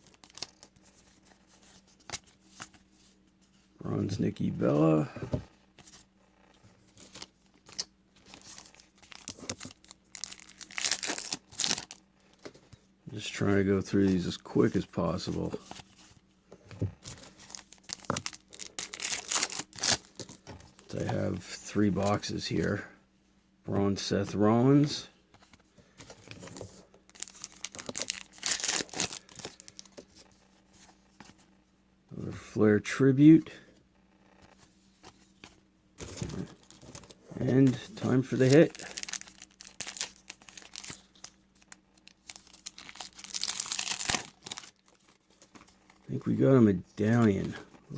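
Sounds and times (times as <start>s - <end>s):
plastic wrapper tearing and crinkling: 0.0s - 0.7s, 7.0s - 12.0s, 17.2s - 20.4s, 27.1s - 29.9s, 36.3s - 45.5s.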